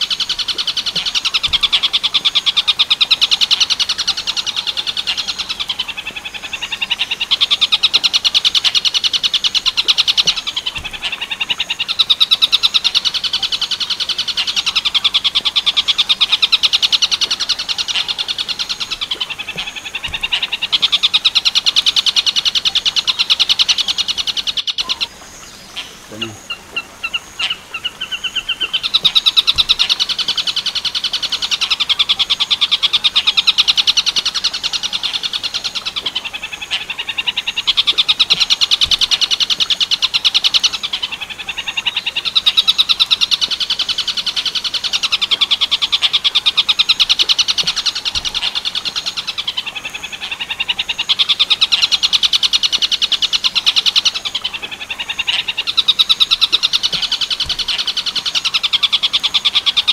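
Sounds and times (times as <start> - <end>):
bird chattering calls: 25.8 - 36.0.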